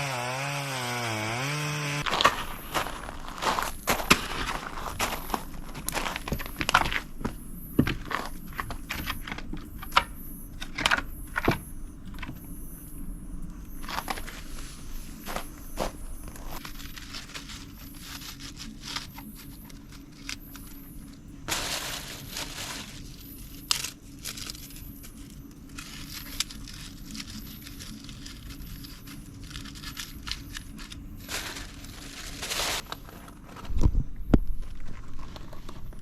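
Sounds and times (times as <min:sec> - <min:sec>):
kindling crackling: 0:02.0 - 0:11.4, 0:12.9 - 0:33.6
rustling bursts: 0:21.5 - 0:33.0.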